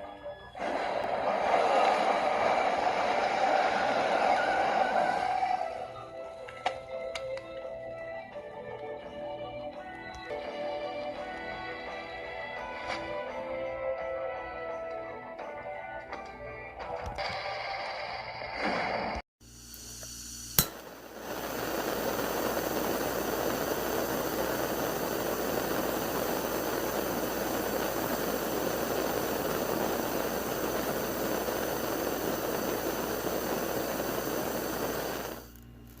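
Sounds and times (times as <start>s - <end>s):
steady rushing hiss: 19.5s - 35.7s
sharp click: 20.0s - 20.8s.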